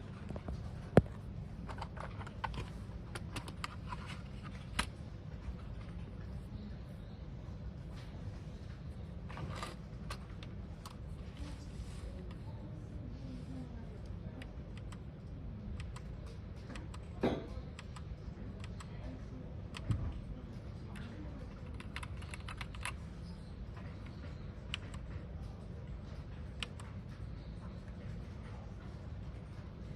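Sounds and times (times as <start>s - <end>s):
steady low hum: 0.0s - 29.9s
mechanical keyboard keystrokes: 19.7s - 20.2s, 21.0s - 23.0s.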